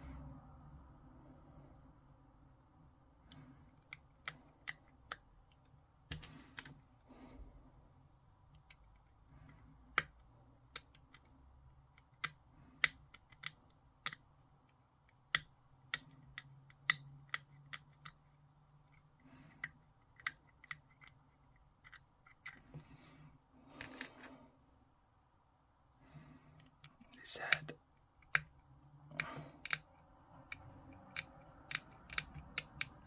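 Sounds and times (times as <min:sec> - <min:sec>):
sharp plastic clicks and snaps: 0:03.2 - 0:06.8, 0:08.5 - 0:22.8, 0:26.6 - 0:33.0.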